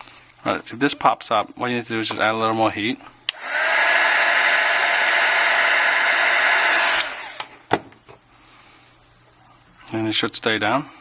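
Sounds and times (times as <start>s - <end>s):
hot-air blower running: 3.3s - 7.7s.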